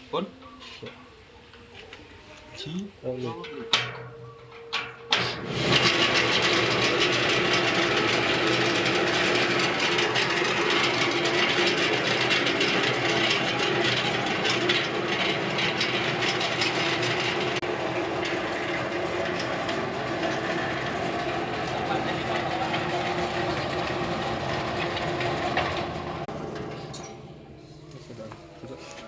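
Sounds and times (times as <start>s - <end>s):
fast rattle: 4.8s - 27.3s
oil spinner motor humming: 4.8s - 27.9s.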